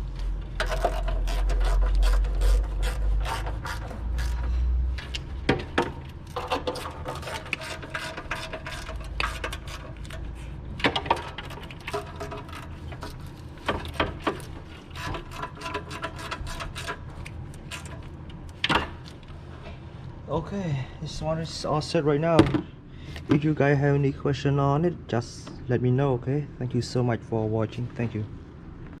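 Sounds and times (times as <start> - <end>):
hand tools clicking and scraping: 0.5 - 19.3.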